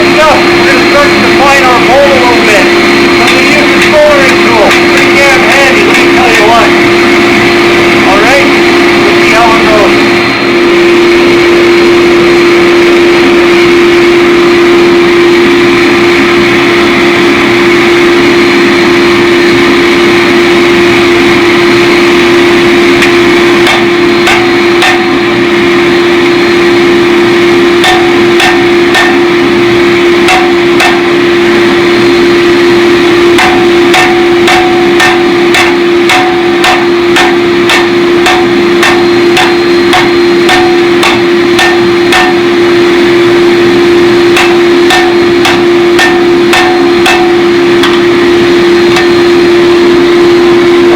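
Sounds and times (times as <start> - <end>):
hammer blows on steel anvil: 0.0 - 6.9, 23.0 - 50.8
loud steady machine hum: 0.0 - 50.9.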